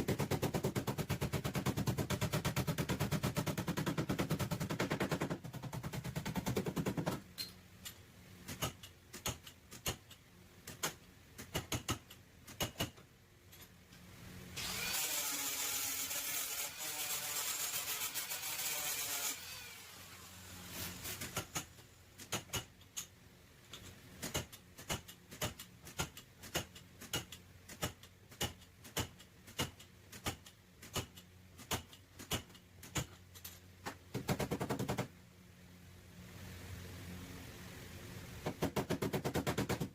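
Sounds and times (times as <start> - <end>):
hammer strikes on sheet metal: 0.0 - 7.2, 38.4 - 39.9.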